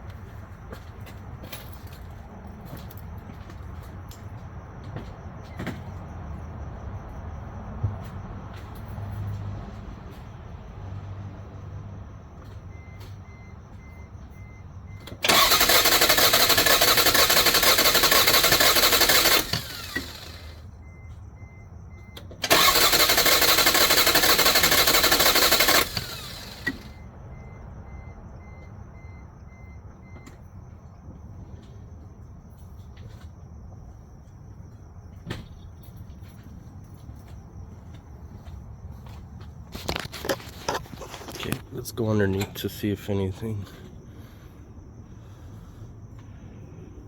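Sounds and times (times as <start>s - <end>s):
engine cranking on starter: 15.0s - 21.0s, 22.2s - 27.0s, 39.7s - 42.8s.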